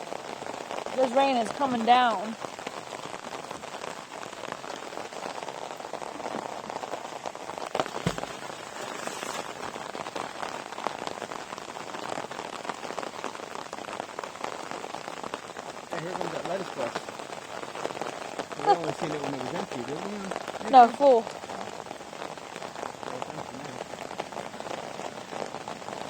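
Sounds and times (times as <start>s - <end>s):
heavy rain: 0.0s - 26.0s
loud knock with low thud: 7.9s - 8.6s.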